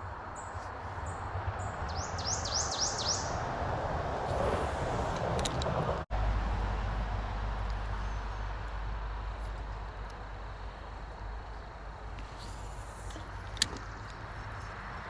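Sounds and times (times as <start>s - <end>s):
songbird singing: 0.0s - 3.6s, 7.4s - 15.0s
outdoor noise with low rumble: 0.0s - 15.0s.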